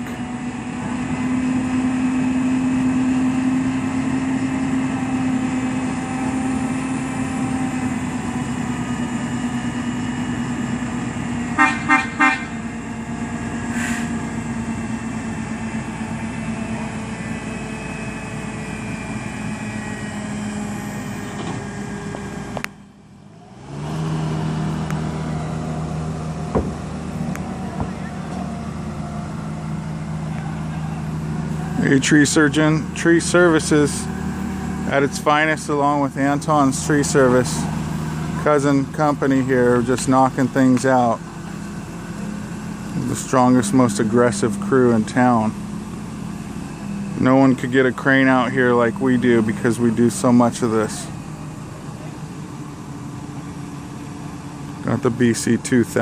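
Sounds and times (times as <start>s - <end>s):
heavy equipment engine running: 0.0s - 56.0s
horn toots: 11.6s - 12.6s.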